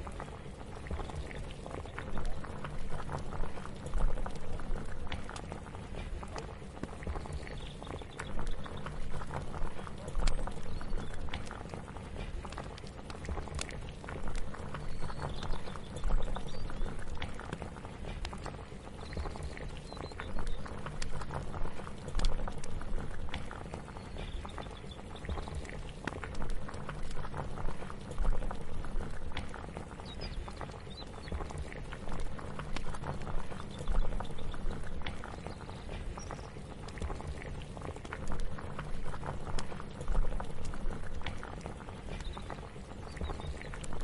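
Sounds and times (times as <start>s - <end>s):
liquid bubbling in a pot: 0.0s - 44.0s.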